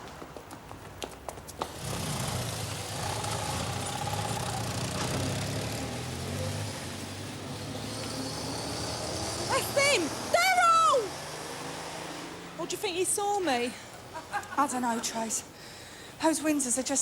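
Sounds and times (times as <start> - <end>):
van engine driving off: 1.6 - 12.4.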